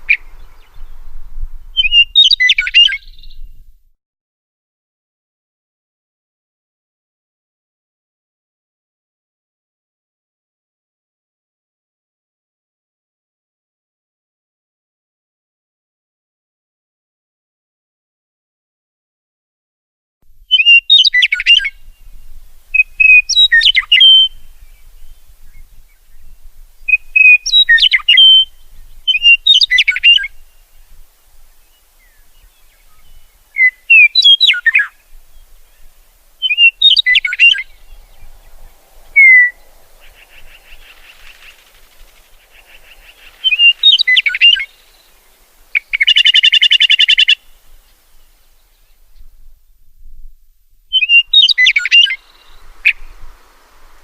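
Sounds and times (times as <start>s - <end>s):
songbird whistled phrases: 1.8s - 3.5s, 20.5s - 26.3s, 26.9s - 30.8s, 32.0s - 41.7s, 42.5s - 47.6s, 50.9s - 53.4s
rapid buzzy bird trill: 39.1s - 47.5s.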